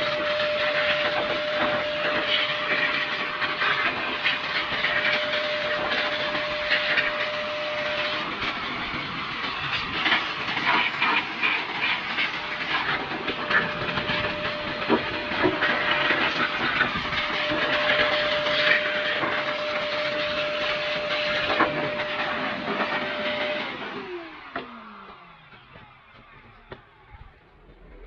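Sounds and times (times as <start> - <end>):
electric air blower running: 0.0 - 28.0.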